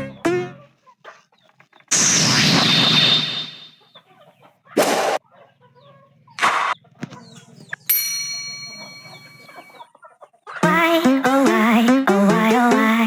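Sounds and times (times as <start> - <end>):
chickens squawking: 0.0 - 7.8, 8.6 - 10.9
ringing tone: 7.9 - 9.8.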